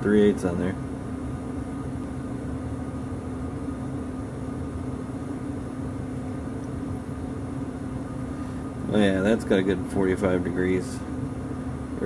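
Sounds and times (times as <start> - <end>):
mechanical hum: 0.0 - 12.0.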